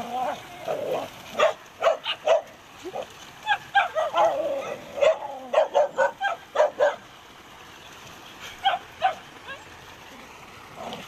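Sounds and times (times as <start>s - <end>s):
dog barking and yipping: 0.2s - 7.1s, 8.5s - 9.7s.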